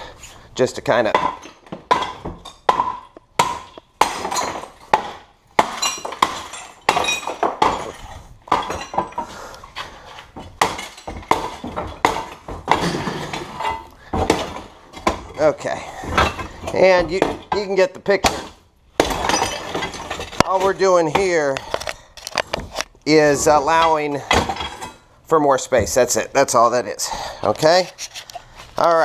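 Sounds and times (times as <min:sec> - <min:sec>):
tamper pounding porcelain: 0:01.1 - 0:09.3, 0:10.4 - 0:15.4
porcelain shards clinking: 0:05.7 - 0:09.2.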